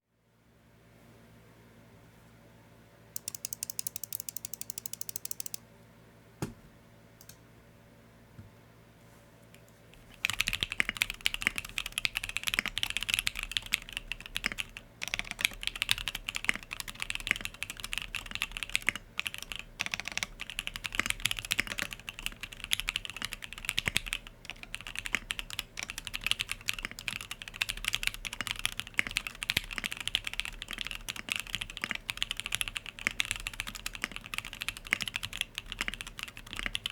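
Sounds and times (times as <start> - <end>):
mechanical keyboard typing: 3.2 - 5.6, 10.0 - 36.9.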